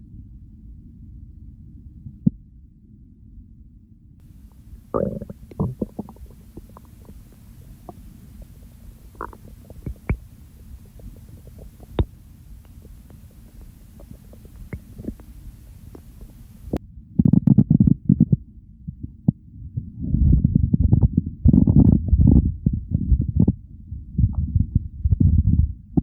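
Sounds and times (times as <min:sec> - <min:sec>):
stomach growling and gurgling: 0:04.3 - 0:18.3, 0:20.1 - 0:26.0.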